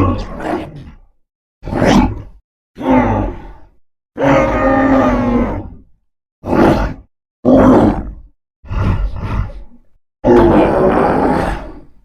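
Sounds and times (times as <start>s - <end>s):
reptilian creature roar: 1.7s - 5.8s, 6.4s - 11.9s.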